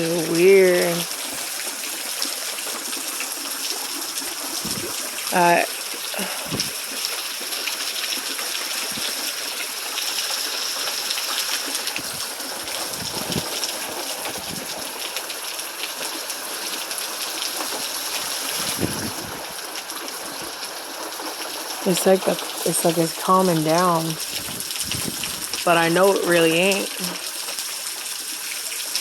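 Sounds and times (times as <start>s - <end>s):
rain and running water: 0.0s - 29.0s
wind buffeting microphone: 4.6s - 5.0s, 6.4s - 6.7s, 12.0s - 14.8s, 18.6s - 19.6s, 24.2s - 25.6s.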